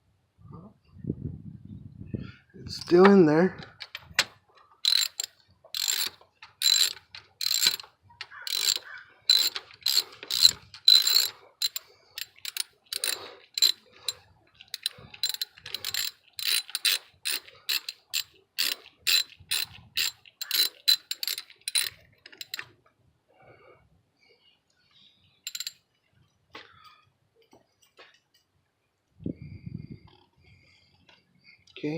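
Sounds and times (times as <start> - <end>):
socket ratchet clicking: 3.7 - 22.7, 25.5 - 25.7.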